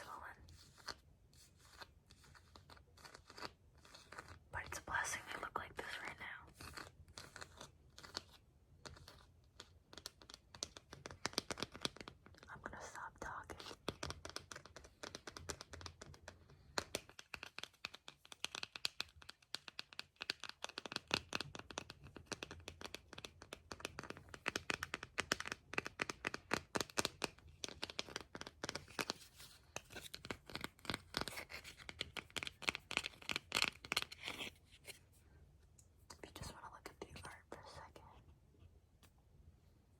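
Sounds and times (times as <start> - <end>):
scratching and crackling object handled: 0.3 - 4.5, 13.6 - 39.2.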